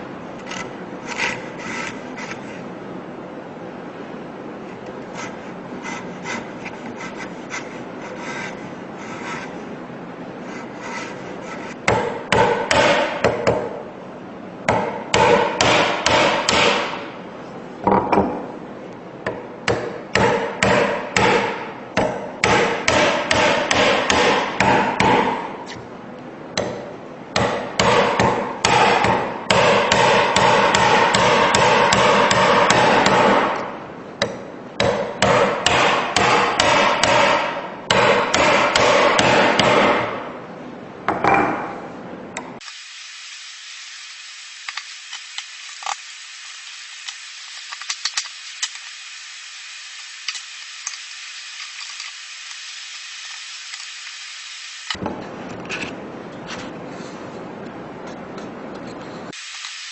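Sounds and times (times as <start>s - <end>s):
chisel scraping wood: 0.4s - 2.6s, 5.1s - 9.6s, 10.4s - 11.8s
mallet striking chisel: 11.8s - 13.7s, 14.7s - 17.0s, 19.3s - 25.5s, 26.6s - 40.1s.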